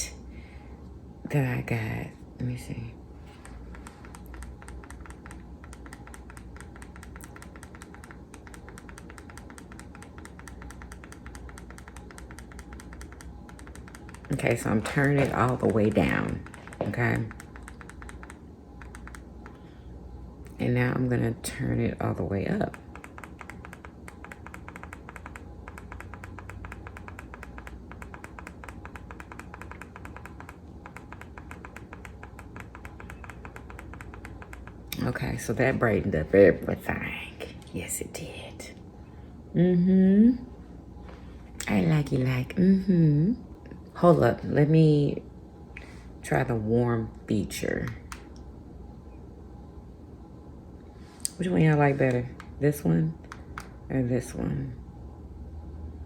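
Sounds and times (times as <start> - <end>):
low steady hum: 0.0 - 56.0
rapid even clicking: 3.3 - 19.6, 22.5 - 35.8.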